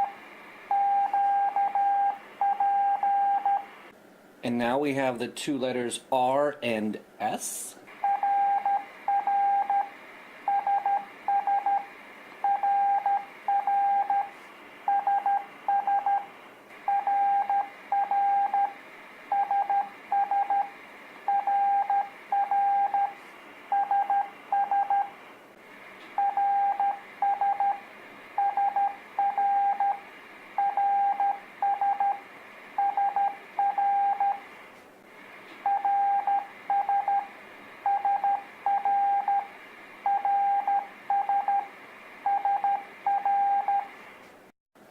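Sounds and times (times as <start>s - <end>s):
morse code beeps: 0.0s - 3.7s, 8.0s - 9.9s, 10.5s - 14.3s, 14.9s - 16.3s, 16.9s - 18.7s, 19.3s - 20.7s, 21.3s - 25.1s, 26.2s - 27.8s, 28.4s - 30.0s, 30.6s - 32.2s, 32.8s - 34.4s, 35.7s - 37.3s, 37.9s - 39.5s, 40.1s - 41.7s, 42.3s - 43.9s.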